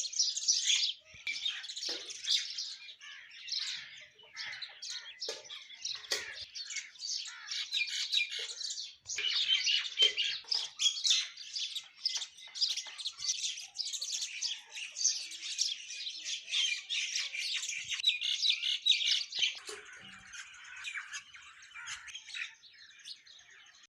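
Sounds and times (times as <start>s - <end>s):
birds chirping and squawking: 0.0s - 23.9s.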